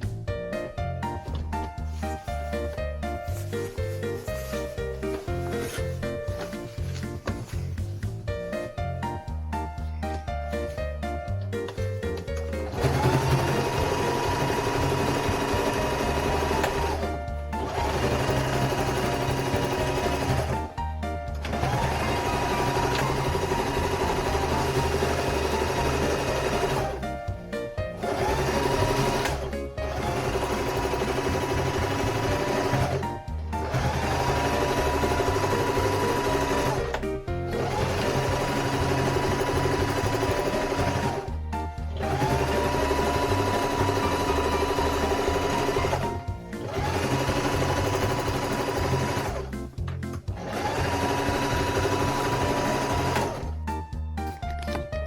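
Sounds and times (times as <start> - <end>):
background music: 0.0 - 55.0
electric sewing machine running: 12.6 - 20.8, 21.4 - 27.0, 27.9 - 49.6, 50.3 - 53.6.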